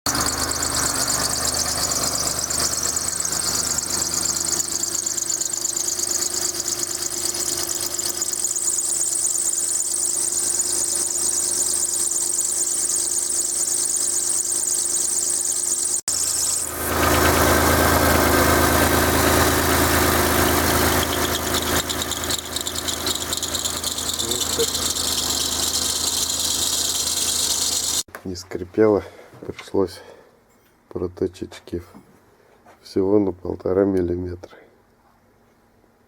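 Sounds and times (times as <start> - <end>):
car engine idling: 0.0 - 28.1
high-pitched drive-belt whistle: 0.1 - 17.4, 18.2 - 28.1.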